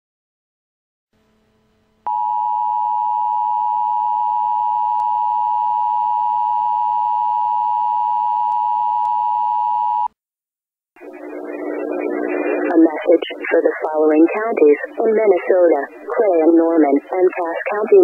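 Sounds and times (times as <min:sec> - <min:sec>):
two-tone alarm: 0:02.1 - 0:10.1.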